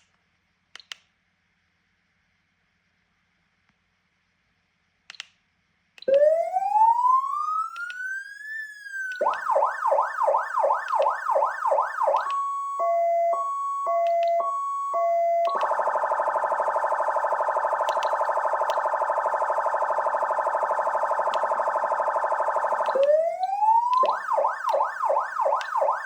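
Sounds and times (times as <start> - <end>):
electronic siren wailing and yelping: 6.1 - 26.0
switch click: 14.0 - 14.4.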